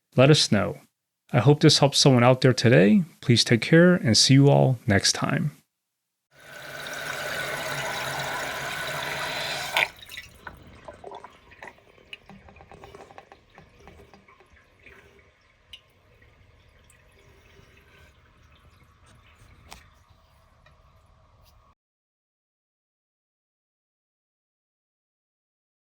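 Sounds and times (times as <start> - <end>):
toilet fill valve hissing: 6.4 - 19.8
water drips and trickles: 6.4 - 21.2.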